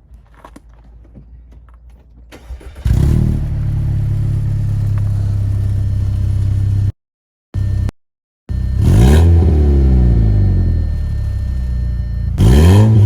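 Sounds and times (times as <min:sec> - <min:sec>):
car engine starting and idling: 0:02.2 - 0:06.9, 0:07.6 - 0:07.9, 0:08.5 - 0:13.0.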